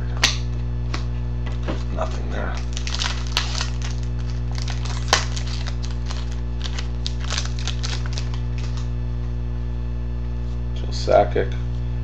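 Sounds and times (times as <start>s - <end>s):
electrical hum: 0.0s - 12.0s
loud snap: 0.2s - 1.1s
foil wrappers crinkling: 1.5s - 8.9s.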